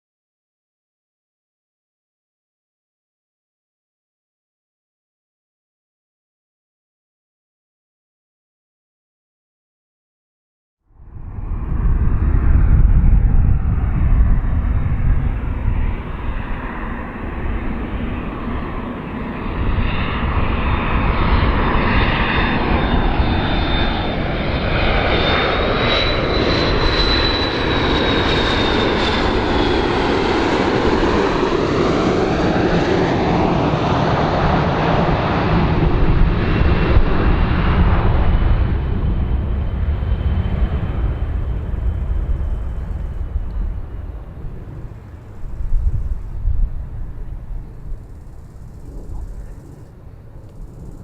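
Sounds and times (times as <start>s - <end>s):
airplane engines roaring past: 10.9s - 51.0s
high engine whine: 10.9s - 51.0s.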